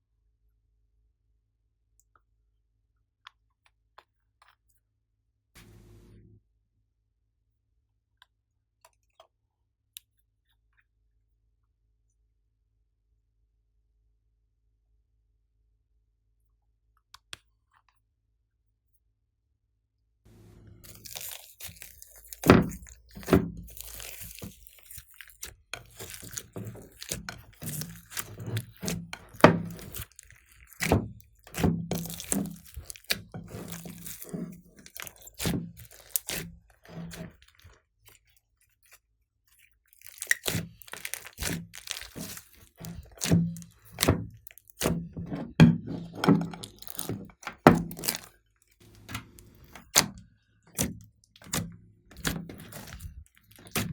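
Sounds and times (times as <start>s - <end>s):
slime squishing by hand: 20.3s - 53.9s.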